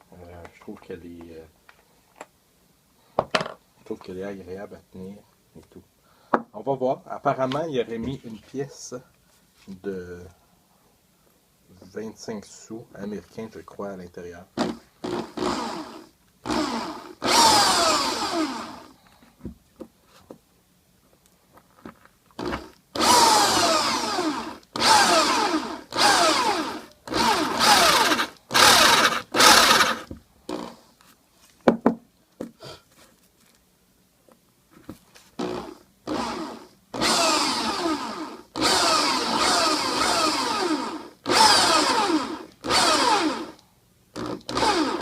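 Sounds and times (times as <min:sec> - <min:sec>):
electric drill drilling: 0:14.6 - 0:18.9, 0:22.4 - 0:30.8, 0:35.4 - 0:43.6, 0:44.2 - 0:45.0.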